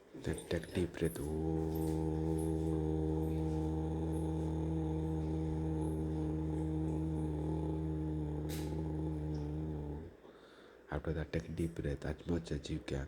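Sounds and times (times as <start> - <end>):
person humming a low note: 1.1 - 10.1.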